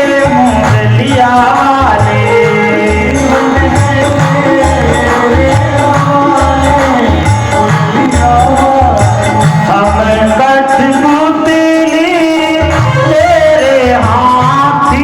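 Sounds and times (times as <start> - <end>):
devotional melody: 0.0 - 15.0
jingling percussion: 0.0 - 15.0
hand drum beat: 0.2 - 10.4.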